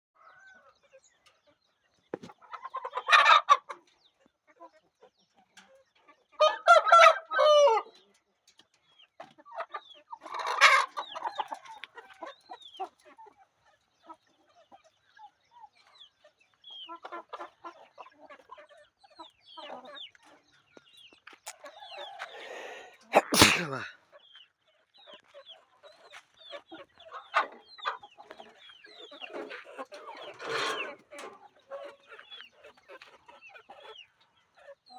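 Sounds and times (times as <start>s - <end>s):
chickens clucking: 0.2s - 23.8s, 25.0s - 34.9s
sharp loud sound: 23.2s - 23.8s.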